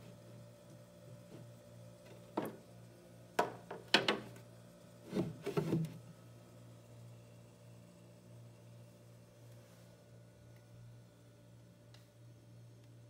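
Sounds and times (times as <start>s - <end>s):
objects knocking and clattering: 3.4s - 4.3s.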